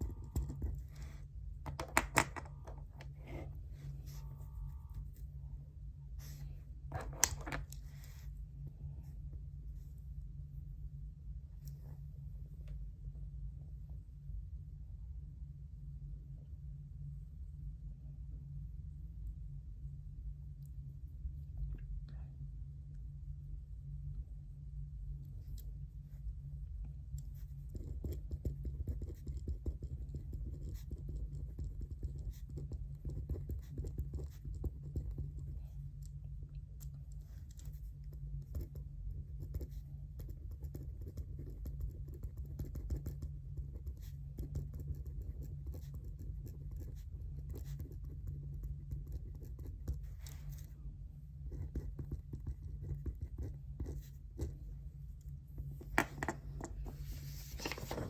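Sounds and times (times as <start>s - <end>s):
steady low hum: 0.0s - 58.0s
pen scratching on paper: 3.0s - 4.4s, 27.3s - 35.5s, 39.4s - 50.8s, 51.4s - 54.6s.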